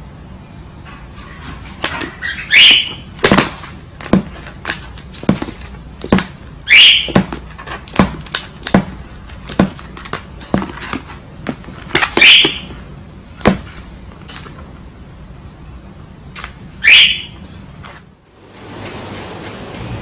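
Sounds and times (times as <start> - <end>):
parrot squawking: 2.1 - 3.1, 6.6 - 7.2, 12.2 - 12.7, 16.8 - 17.4.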